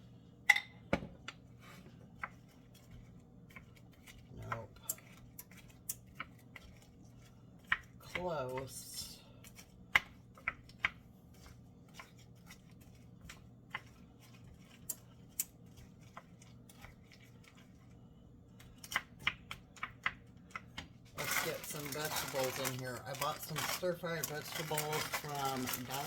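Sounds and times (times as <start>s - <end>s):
kitchen items clicking and tapping: 18.6s - 26.0s.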